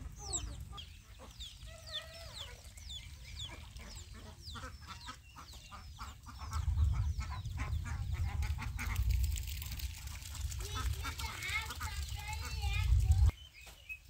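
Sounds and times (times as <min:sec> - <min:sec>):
chickens peeping and clucking: 0:00.0 - 0:14.0
low rumble: 0:06.2 - 0:13.3.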